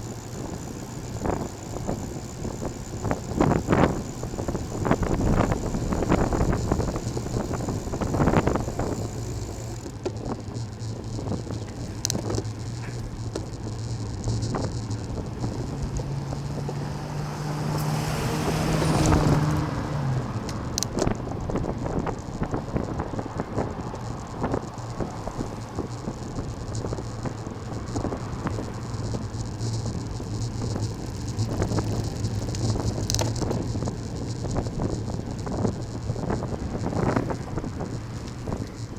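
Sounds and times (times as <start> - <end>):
light rattling: 0.0 - 38.9
wind and road noise: 0.0 - 38.9
vehicle passing: 14.0 - 23.0.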